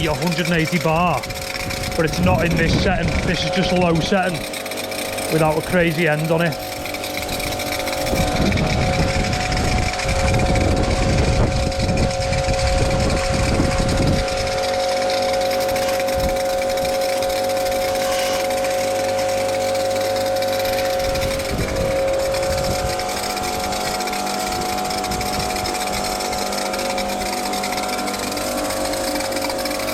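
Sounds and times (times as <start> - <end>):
pressure washer motor humming: 0.0 - 29.9
water jet spraying: 0.0 - 29.9.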